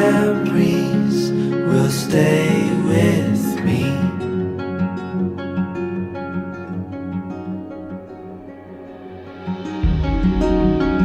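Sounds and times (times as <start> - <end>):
acoustic guitar: 0.0 - 11.0
bass: 9.8 - 11.0.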